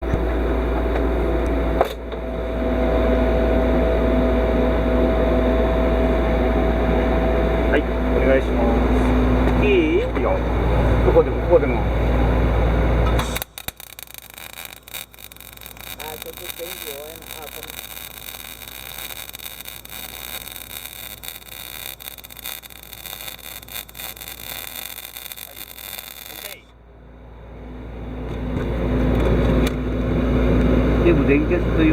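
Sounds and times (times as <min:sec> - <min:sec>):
welding machine humming: 0:00.2 - 0:26.7
sharp pops: 0:13.0 - 0:26.6.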